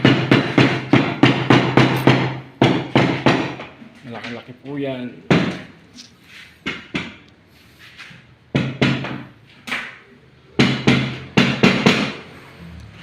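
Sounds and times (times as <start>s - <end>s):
hammer strikes: 0.0s - 3.8s, 5.2s - 5.7s, 6.6s - 7.3s, 8.5s - 10.0s, 10.6s - 12.4s.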